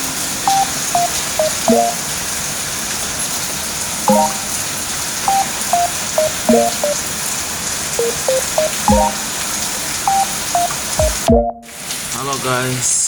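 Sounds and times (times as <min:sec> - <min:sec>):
plucked melody: 0:00.0 - 0:02.2, 0:04.1 - 0:04.7, 0:05.3 - 0:07.0, 0:08.0 - 0:09.4, 0:10.1 - 0:11.8.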